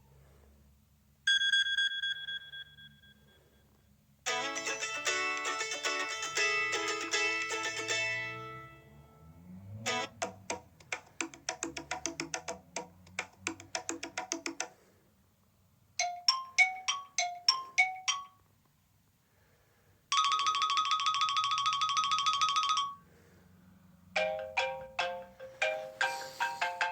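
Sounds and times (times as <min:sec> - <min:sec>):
plucked-string ringtone melody: 0:04.3 - 0:10.7, 0:16.0 - 0:18.5, 0:20.1 - 0:23.0, 0:24.2 - 0:26.9
fast trilling phone ring: 0:20.1 - 0:23.1
chiming ringtone phrase: 0:20.2 - 0:23.0.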